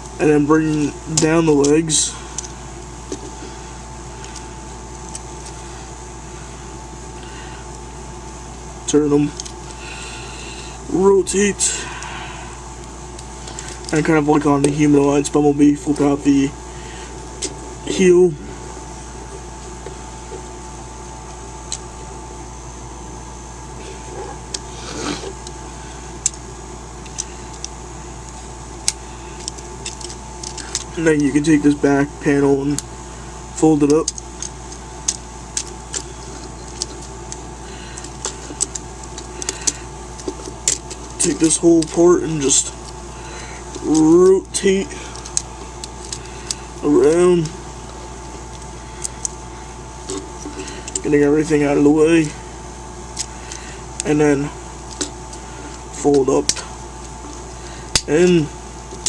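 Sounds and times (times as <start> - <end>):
background hum and hiss: 0.0 - 59.0
plastic toy parts clicking: 39.4 - 40.9.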